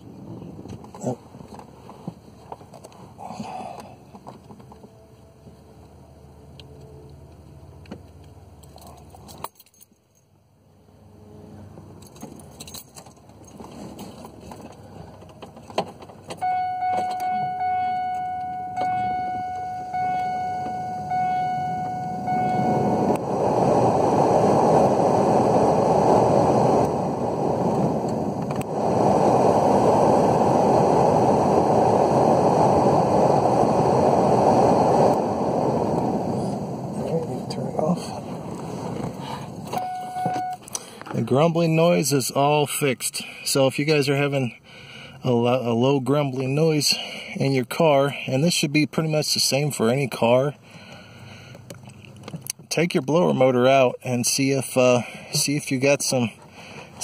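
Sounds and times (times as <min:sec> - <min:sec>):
steady electronic tone: 0:16.4 - 0:26.0, 0:39.8 - 0:40.6
blower motor rushing air: 0:16.4 - 0:40.5.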